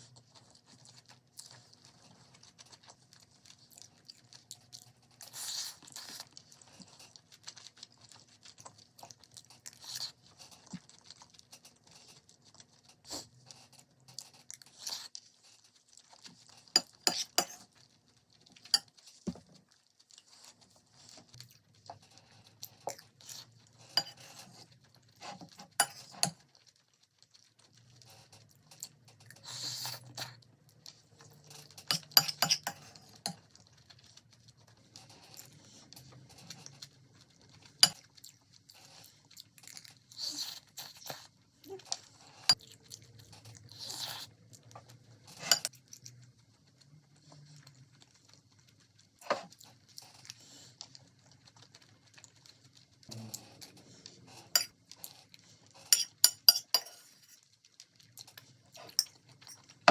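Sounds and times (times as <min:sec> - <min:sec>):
utensils clinking on dishes: 0:31.9 - 0:32.8, 0:56.0 - 0:57.1.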